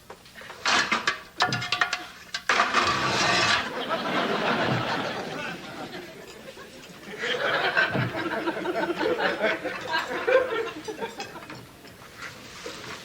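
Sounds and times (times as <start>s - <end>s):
studio audience laughter: 3.6s - 11.6s.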